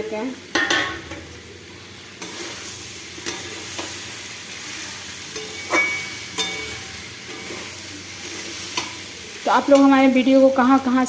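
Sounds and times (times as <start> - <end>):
vegetables sizzling in oil: 0.0 - 11.0
spatula scraping a pan: 2.2 - 10.0.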